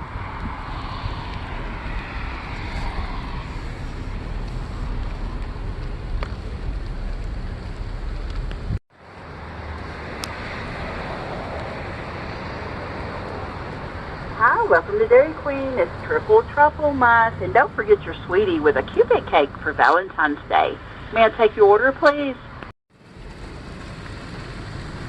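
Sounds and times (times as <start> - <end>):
car engine and road noise: 0.0 - 25.0.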